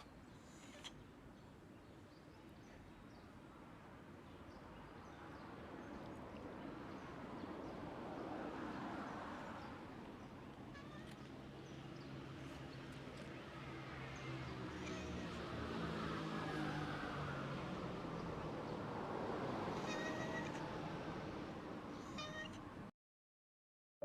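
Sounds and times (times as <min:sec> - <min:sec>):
vehicle passing: 0:07.2 - 0:21.9.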